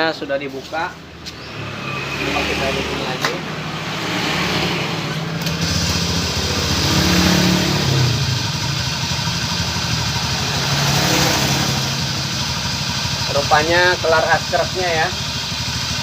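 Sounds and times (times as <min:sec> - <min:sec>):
scooter engine running: 0:03.5 - 0:16.0.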